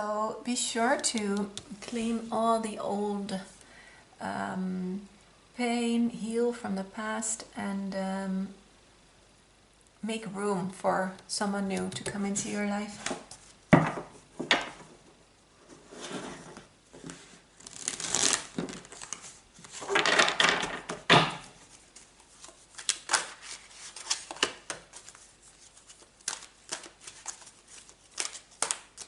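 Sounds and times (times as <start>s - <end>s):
cards shuffling: 17.0s - 21.0s, 21.6s - 29.0s.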